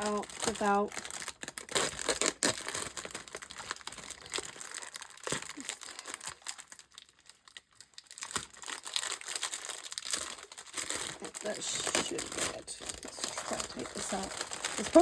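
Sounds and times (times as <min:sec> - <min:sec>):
packaging bag crinkling: 0:00.0 - 0:15.0.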